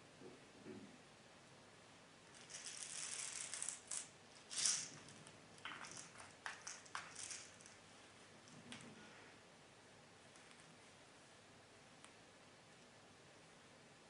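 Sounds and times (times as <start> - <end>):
plastic pellets rattling: 2.3 - 7.8.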